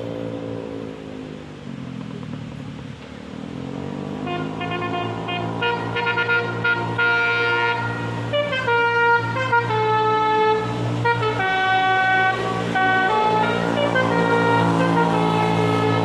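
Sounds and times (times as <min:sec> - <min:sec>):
multi-trumpet air horn tune: 0:04.2 - 0:16.0.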